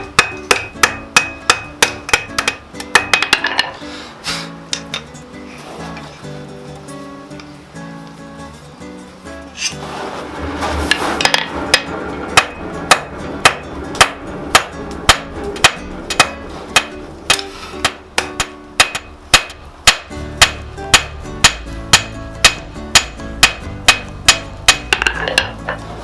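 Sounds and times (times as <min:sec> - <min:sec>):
hammer striking steel on anvil: 0:00.0 - 0:03.8, 0:10.9 - 0:25.8
background music: 0:00.0 - 0:26.0.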